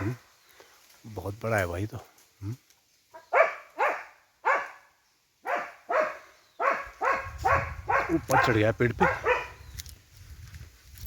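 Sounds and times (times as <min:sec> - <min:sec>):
dog barking sharply: 0:03.2 - 0:09.6.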